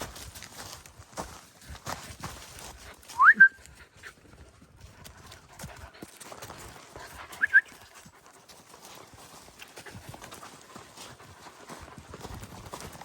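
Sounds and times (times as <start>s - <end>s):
puppy yips: 7.4s - 7.7s.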